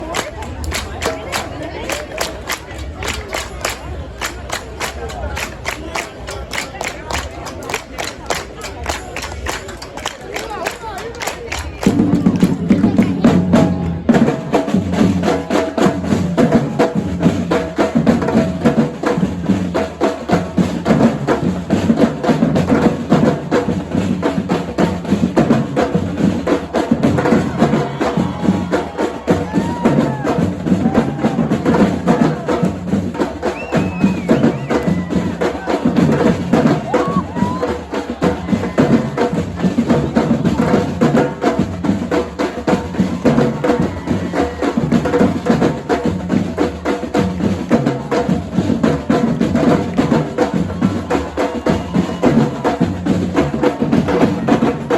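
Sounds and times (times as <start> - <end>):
percussion drum line: 0.0 - 54.9
rapid snare drum strokes: 11.8 - 54.9.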